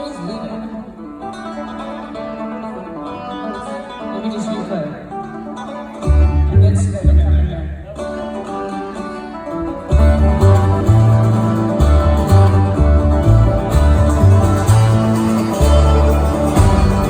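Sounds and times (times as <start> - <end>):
acoustic string band playing: 0.0 - 17.0
stepping bass line: 9.9 - 17.0.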